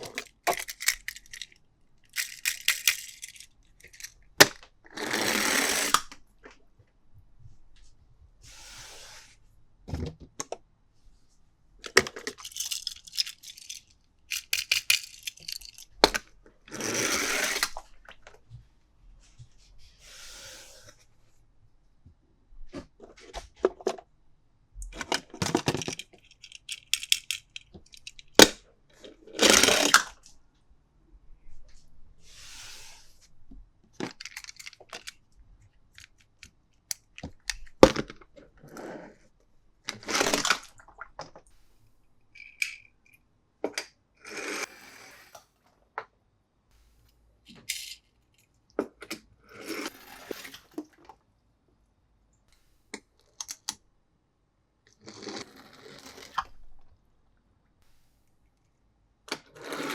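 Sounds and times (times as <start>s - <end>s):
packaging rustling and tearing: 0.0s - 4.1s.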